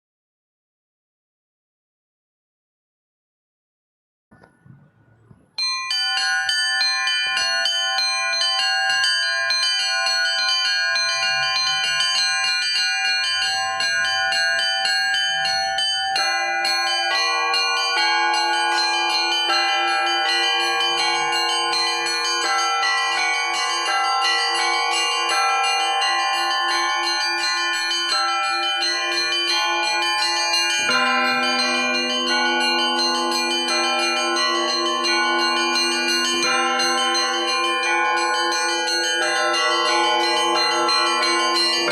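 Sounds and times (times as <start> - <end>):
church bells ringing: 5.6 - 41.9.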